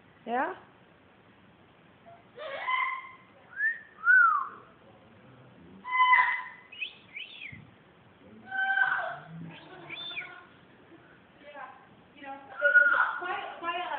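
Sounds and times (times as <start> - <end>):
bird whistling and calling: 3.6 - 4.6, 6.7 - 7.6, 9.6 - 10.4, 12.6 - 13.2.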